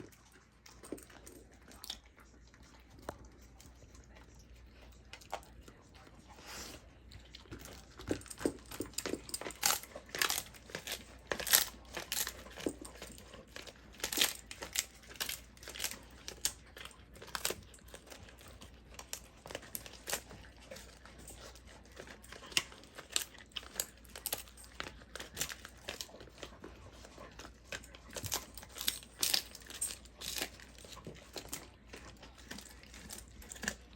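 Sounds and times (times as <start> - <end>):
dog chewing with crunching bites: 0.0 - 33.9.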